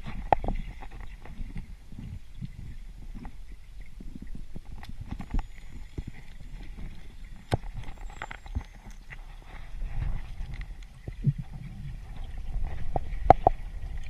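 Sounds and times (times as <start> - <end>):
low rumble of moving water: 0.0 - 14.0
underwater clicks and knocks: 0.0 - 14.0.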